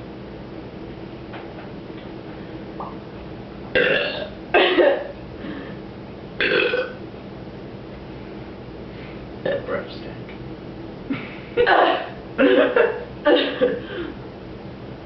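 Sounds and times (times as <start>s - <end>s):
loud burps: 3.7s - 5.1s, 6.4s - 7.0s.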